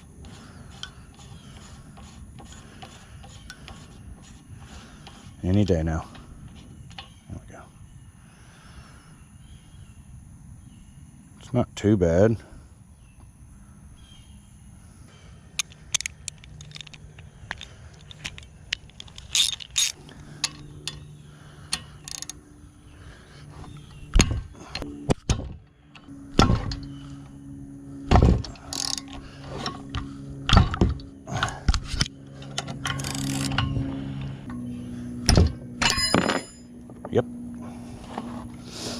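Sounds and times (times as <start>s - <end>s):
hand tools clinking on metal: 35.8s - 36.7s.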